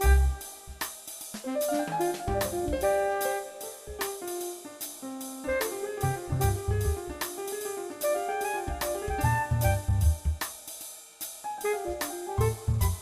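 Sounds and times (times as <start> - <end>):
upbeat jazzy music: 0.0 - 10.5, 11.4 - 13.0.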